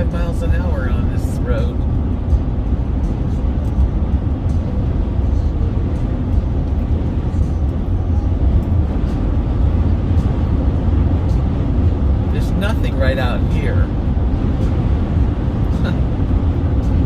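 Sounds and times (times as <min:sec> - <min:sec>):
car road noise inside cabin: 0:00.0 - 0:17.0.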